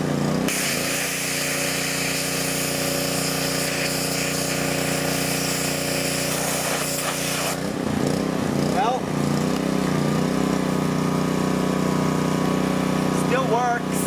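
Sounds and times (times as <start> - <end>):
pressure washer hum: 0.0 - 14.0
water spray hissing: 0.5 - 7.6.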